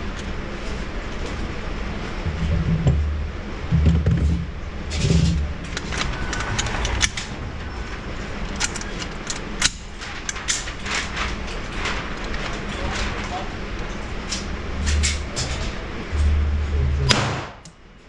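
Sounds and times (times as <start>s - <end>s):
heavy low thumps: 2.1s - 5.6s, 14.5s - 17.6s
gunshots: 17.1s - 17.6s.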